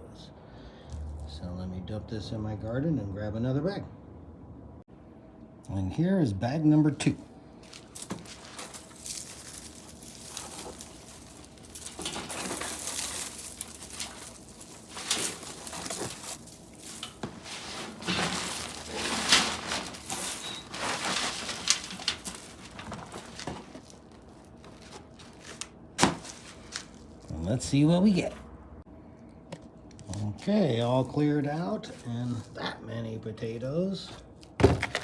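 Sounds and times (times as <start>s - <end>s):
soil rustling and scraping: 7.6s - 28.3s.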